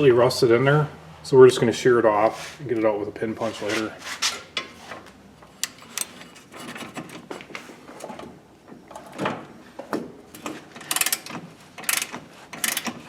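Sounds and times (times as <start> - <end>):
hand tools scraping on metal: 3.4 - 5.0.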